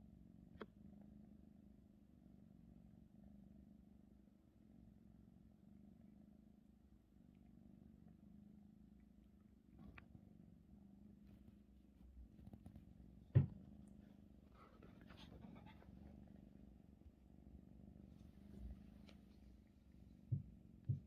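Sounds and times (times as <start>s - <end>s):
short dull thumps: 12.4s - 14.0s, 20.2s - 21.0s.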